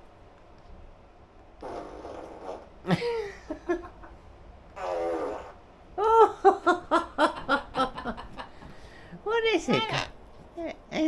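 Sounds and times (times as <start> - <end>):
cockatoo raspy noise: 4.8 - 5.6.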